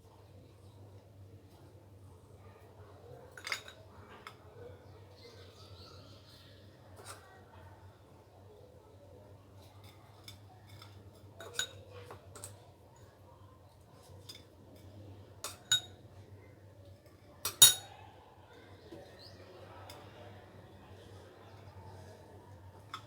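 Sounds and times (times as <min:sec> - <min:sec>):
metal utensils clinking on dishes: 0:03.4 - 0:04.4, 0:09.8 - 0:12.6, 0:14.2 - 0:16.0, 0:17.4 - 0:17.9.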